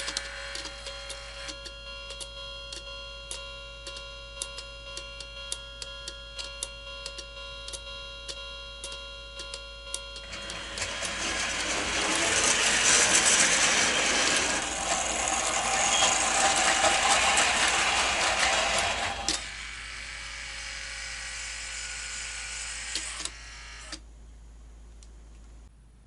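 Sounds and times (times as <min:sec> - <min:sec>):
gearing whirring: 0:10.1 - 0:20.6
model train wheels clattering: 0:10.2 - 0:19.4.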